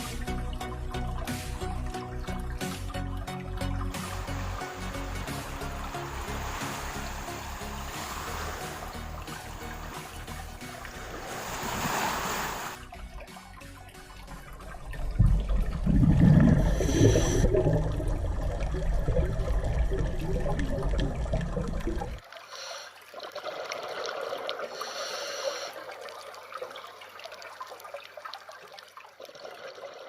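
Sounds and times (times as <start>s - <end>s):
water rushing with low rumble: 0.0s - 22.4s
water trickling and bubbling: 0.0s - 30.0s.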